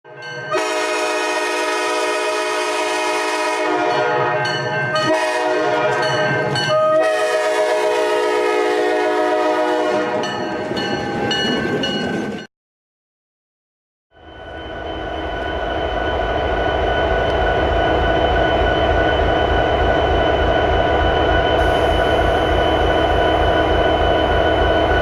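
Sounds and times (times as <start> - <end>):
locomotive air horn chord: 0.5 - 4.4, 5.0 - 6.1, 6.7 - 10.2.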